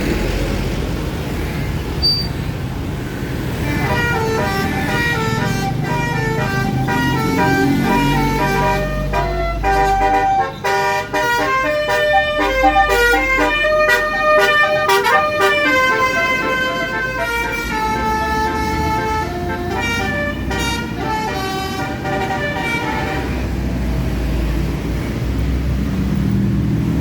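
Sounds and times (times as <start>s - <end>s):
musical air horn melody: 3.6s - 23.4s.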